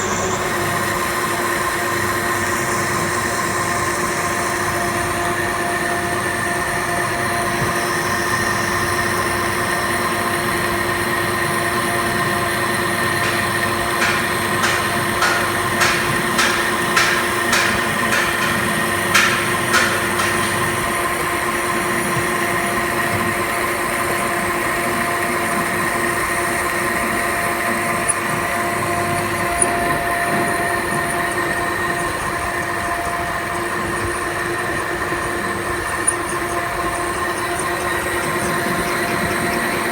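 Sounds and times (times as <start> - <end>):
metal lathe humming: 0.0 - 39.9
sharp knocks: 13.2 - 21.1.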